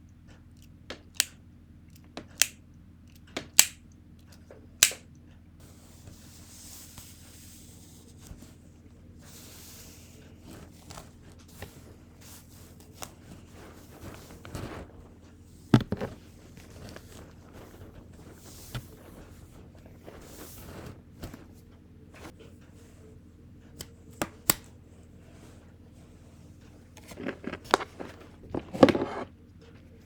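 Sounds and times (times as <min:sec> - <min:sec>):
small taps and clicks: 0:00.3 - 0:05.0
sharp click: 0:03.6 - 0:03.8, 0:04.8 - 0:05.0.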